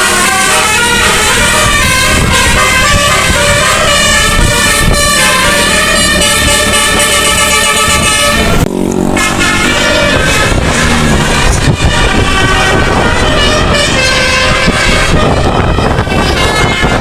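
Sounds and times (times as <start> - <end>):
bus musical air horn playing tune: 0.0 - 17.0.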